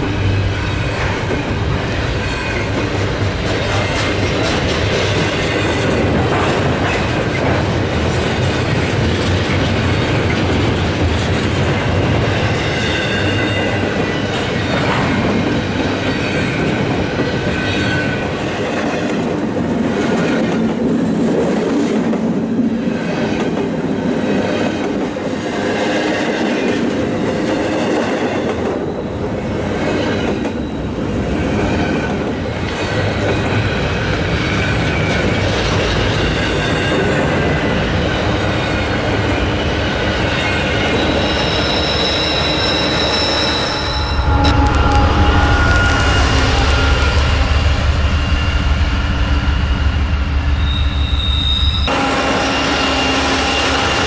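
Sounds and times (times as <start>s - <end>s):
train wheels clacking: 0.0s - 50.4s
high-pitched wheel squeal: 40.3s - 54.0s
deep rumble: 44.1s - 51.9s.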